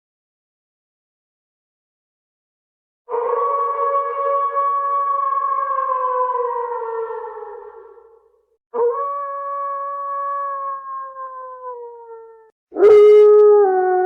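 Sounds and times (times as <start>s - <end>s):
wolf howling: 3.1s - 8.2s, 8.8s - 14.0s.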